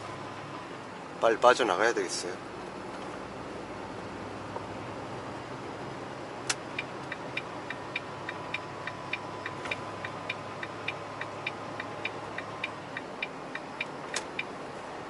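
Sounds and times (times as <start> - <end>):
truck engine humming: 0.0 - 15.0
turn signal ticking: 4.4 - 15.0.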